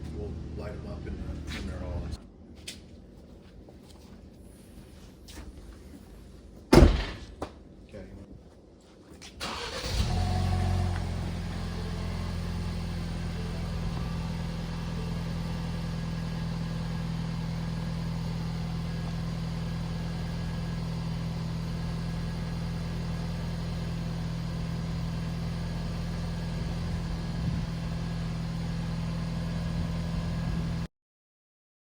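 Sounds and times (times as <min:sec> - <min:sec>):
car engine starting and idling: 0:00.0 - 0:02.2, 0:09.4 - 0:30.9.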